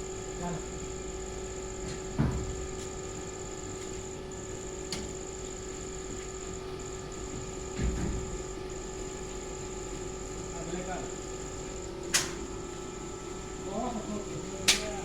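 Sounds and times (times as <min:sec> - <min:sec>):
furnace electrical hum: 0:00.0 - 0:15.0.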